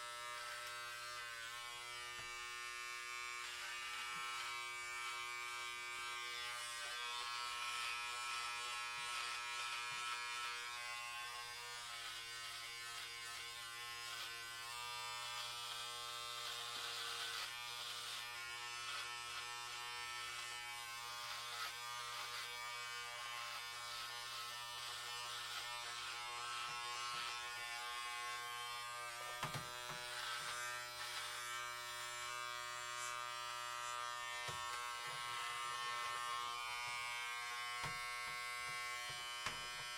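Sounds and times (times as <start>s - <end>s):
electric hair clippers buzzing: 0.0s - 39.9s.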